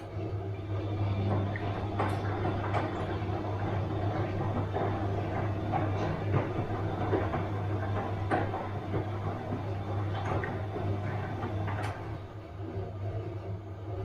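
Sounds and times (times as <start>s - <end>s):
washing machine humming and rattling: 0.0s - 14.0s.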